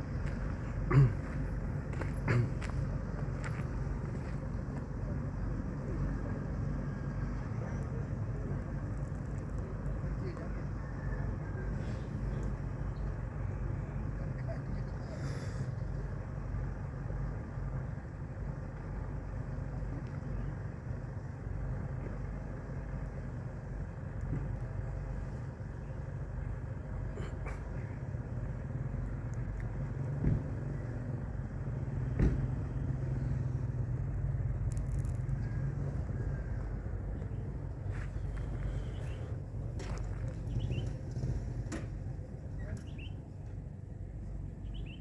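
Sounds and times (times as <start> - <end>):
boat engine humming: 0.0 - 45.0.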